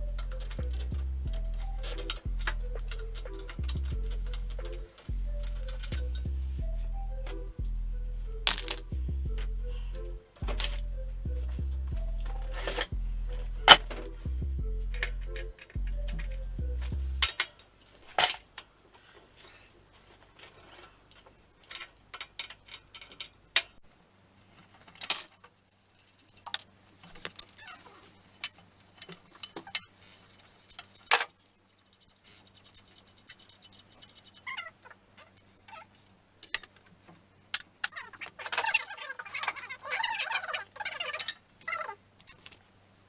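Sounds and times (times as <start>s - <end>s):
clicks and knocks of hand tools: 24.8s - 27.6s, 28.3s - 34.6s, 36.4s - 39.6s, 41.0s - 41.4s.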